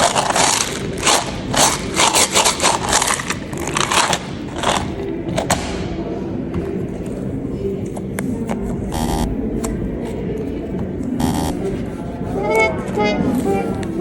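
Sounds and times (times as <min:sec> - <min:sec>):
hands kneading modelling clay: 0:00.0 - 0:05.5.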